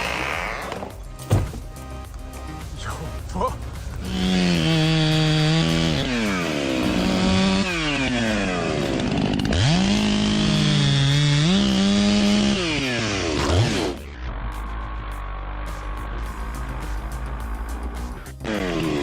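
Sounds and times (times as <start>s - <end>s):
chainsaw engine revving: 0.0s - 0.9s, 4.0s - 19.0s.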